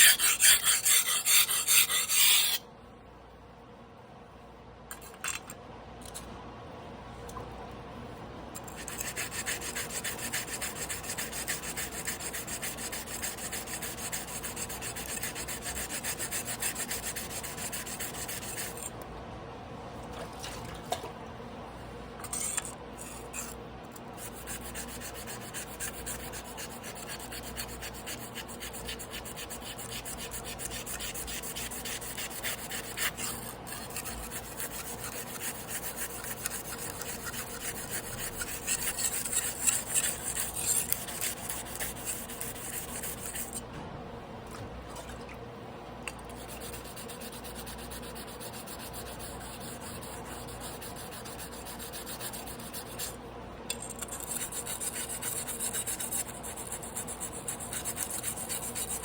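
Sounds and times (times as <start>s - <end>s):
knife grinding on whetstone: 0.0s - 2.6s, 24.2s - 43.6s.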